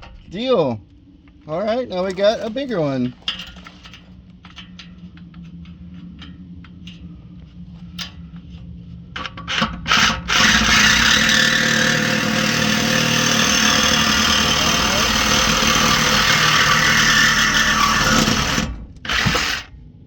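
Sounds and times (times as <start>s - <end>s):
power saw cutting steel pipe: 9.2s - 19.7s.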